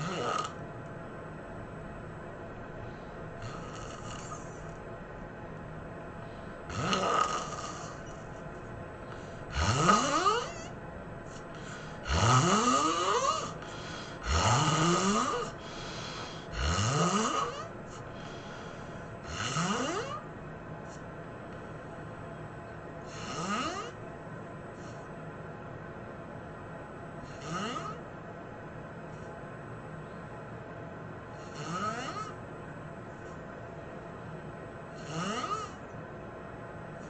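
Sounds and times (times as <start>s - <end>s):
person snoring: 0.0s - 0.6s, 3.4s - 4.7s, 6.7s - 8.1s, 9.5s - 10.7s, 11.3s - 20.2s, 23.1s - 24.0s, 27.2s - 28.0s, 31.4s - 32.4s, 35.0s - 35.8s.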